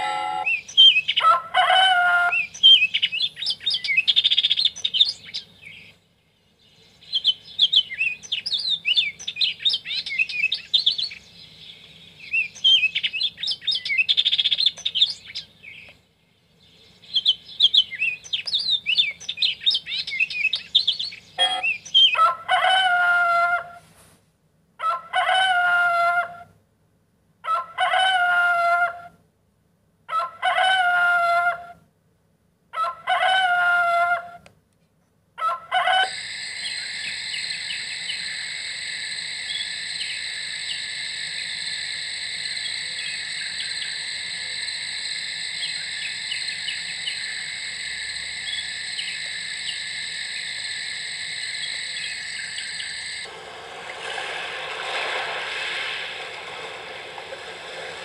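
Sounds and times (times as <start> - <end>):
songbirds chirping: 0.2 - 1.4, 2.2 - 22.3
rooster crowing: 1.2 - 2.4, 21.4 - 23.8, 24.8 - 26.4, 27.5 - 29.0, 35.4 - 36.3.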